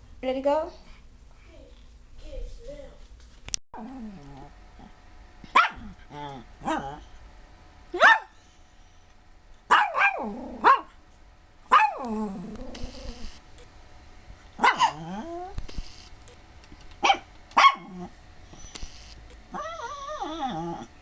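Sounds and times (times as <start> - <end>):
dog barking: 5.5 - 5.9, 8.0 - 8.4, 9.7 - 11.0, 11.7 - 12.1, 14.6 - 15.1, 17.0 - 18.0.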